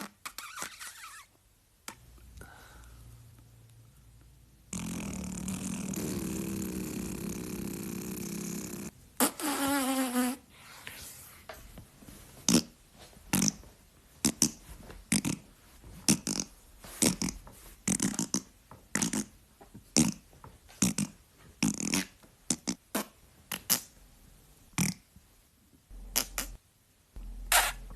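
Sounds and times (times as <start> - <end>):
fart sound effects: 4.7 - 10.4, 12.4 - 13.6, 16.1 - 19.4, 20.8 - 23.9, 26.1 - 26.6, 27.4 - 27.9.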